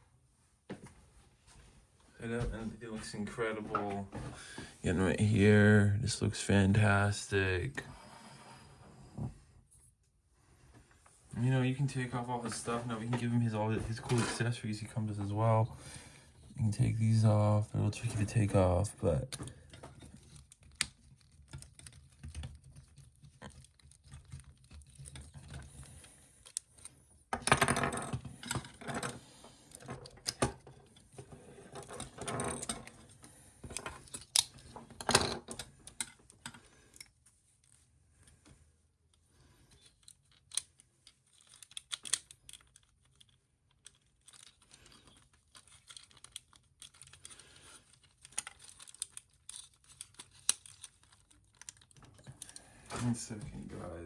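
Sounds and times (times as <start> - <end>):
plastic pieces clicking and rattling: 17.9 - 30.8, 31.7 - 37.8, 39.7 - 52.6.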